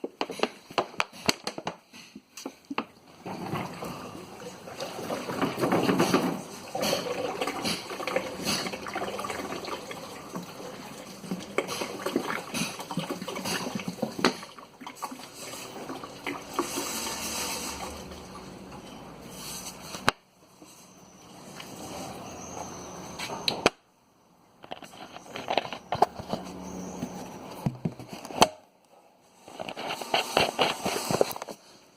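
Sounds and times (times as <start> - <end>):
small knocks and clatters: 0.0 - 4.1, 4.9 - 8.8, 24.6 - 28.6
fuel splashing into tank: 3.0 - 18.7.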